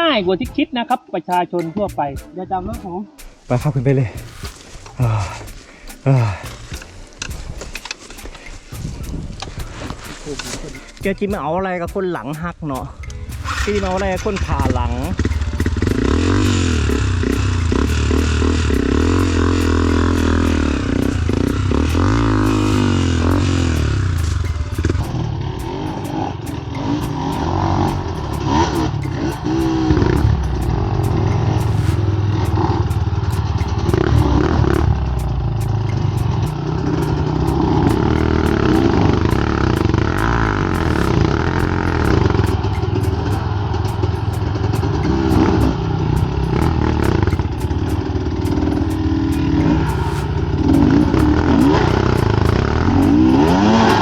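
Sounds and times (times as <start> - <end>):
dirt bike engines revving: 12.8 - 54.0.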